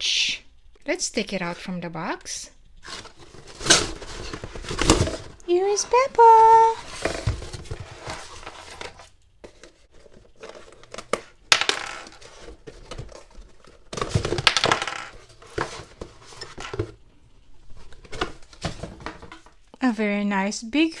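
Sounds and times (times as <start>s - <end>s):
plastic clicks and clatters: 2.8s - 17.0s
plastic and cardboard rustling: 2.8s - 19.7s.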